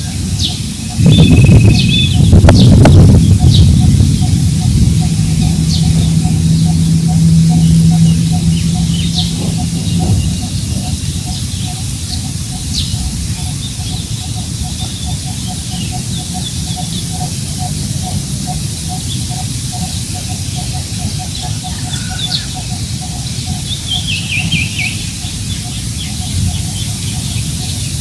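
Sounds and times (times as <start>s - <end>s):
birds chirping: 0.0s - 28.0s
wind rumbling on microphone: 0.0s - 28.0s
repeating low note: 1.0s - 11.7s.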